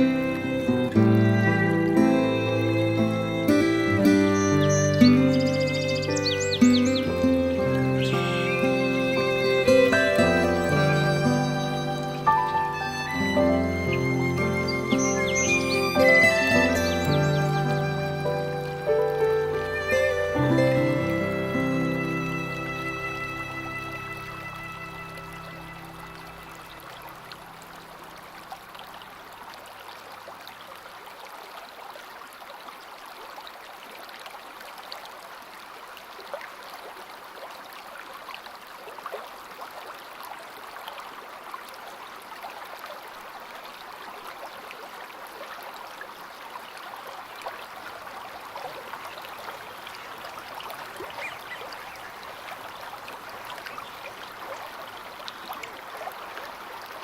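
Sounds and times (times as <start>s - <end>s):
instrumental music: 0.0s - 26.7s
stream flowing and gurgling: 0.0s - 57.0s.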